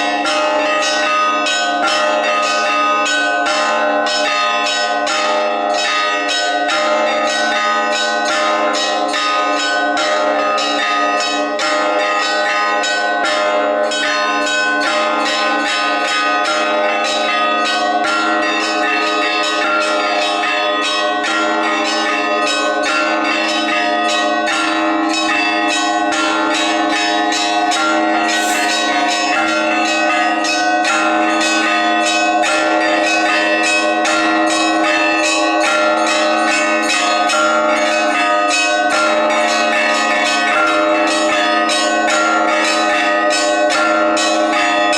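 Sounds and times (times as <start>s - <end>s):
large church bells ringing: 0.0s - 44.9s
small bells striking rapidly: 26.9s - 31.4s.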